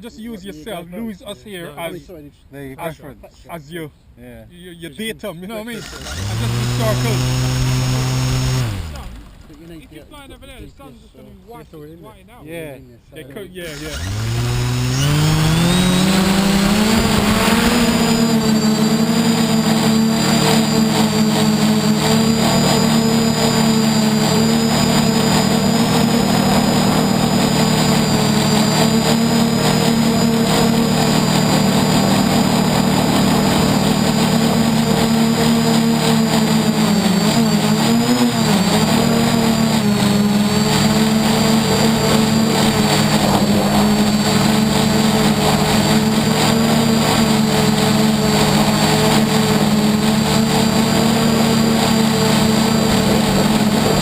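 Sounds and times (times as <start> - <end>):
drone propellers whining: 5.7 - 9.7, 13.7 - 54.0.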